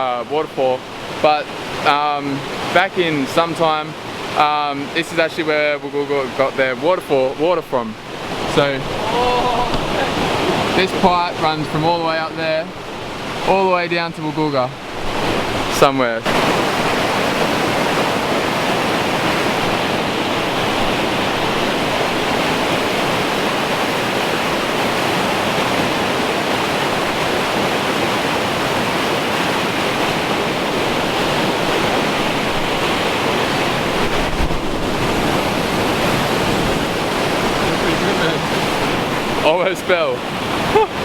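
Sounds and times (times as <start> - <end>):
waterfall rushing: 0.0 - 41.0
low thump: 9.6 - 10.0.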